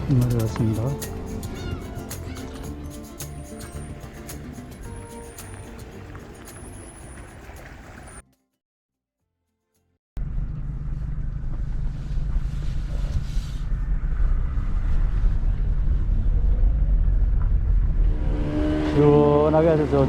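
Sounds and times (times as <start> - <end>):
motorboat engine running: 3.2 - 8.2
water churning: 3.7 - 8.2.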